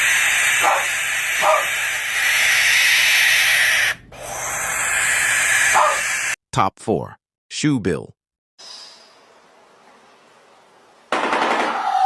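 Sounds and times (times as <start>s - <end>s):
barn owl screeching: 0.0s - 6.4s.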